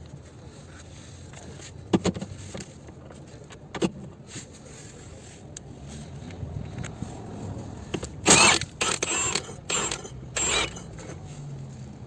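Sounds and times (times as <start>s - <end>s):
hand tools clinking on steel: 8.3s - 11.3s.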